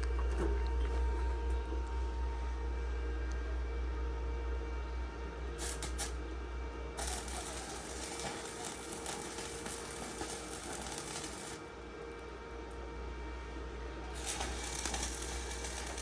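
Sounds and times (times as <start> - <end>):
arc welding crackling sizzle: 5.6 - 6.2, 6.8 - 11.8, 14.1 - 16.0.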